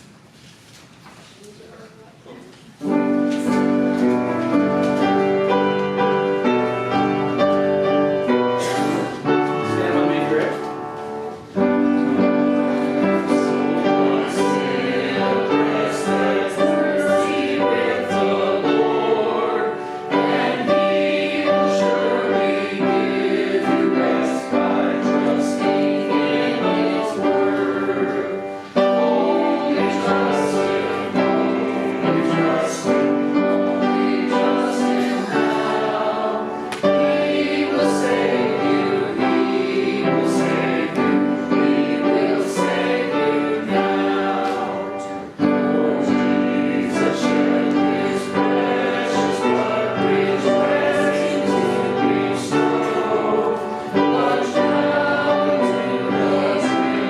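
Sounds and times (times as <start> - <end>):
congregation singing a hymn: 2.7 - 57.0.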